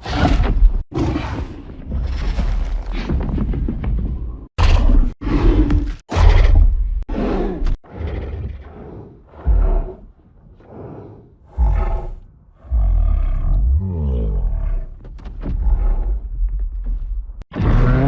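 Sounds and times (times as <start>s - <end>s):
monster roars and growls: 4.6s - 16.4s, 17.5s - 18.0s.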